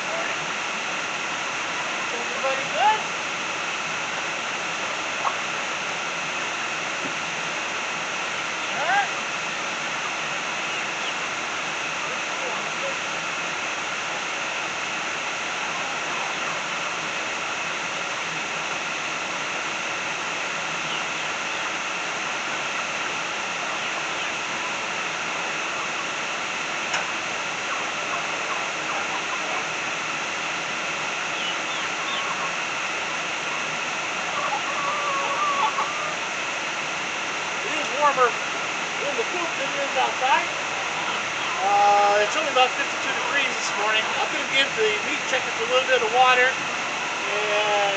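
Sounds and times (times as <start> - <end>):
faint constant whine: 0.0 - 47.9
poultry chirping and calling: 5.2 - 5.5, 10.5 - 11.3, 15.6 - 17.0, 20.8 - 21.8, 23.6 - 24.8, 25.7 - 26.1, 27.6 - 29.7, 31.2 - 32.7, 34.2 - 36.3, 40.0 - 42.3
steady rushing noise: 36.1 - 47.9.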